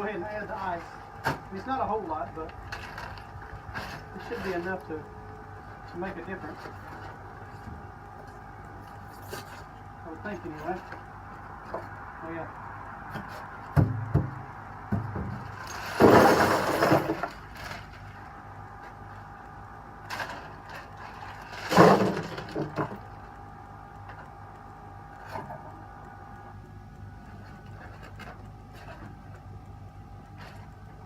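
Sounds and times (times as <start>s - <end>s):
fan humming: 0.0s - 31.0s
knocks on styrofoam cooler: 13.8s - 15.4s.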